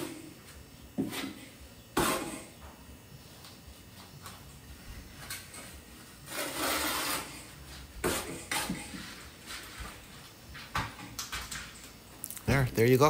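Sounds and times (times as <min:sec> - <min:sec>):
trowel scraping membrane: 0:02.0 - 0:02.5, 0:06.2 - 0:09.8.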